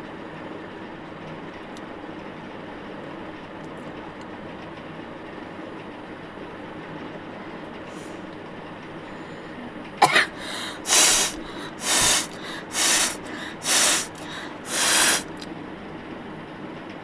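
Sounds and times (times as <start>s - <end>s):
nose snort: 10.0s - 15.4s
person blowing nose: 10.0s - 15.4s.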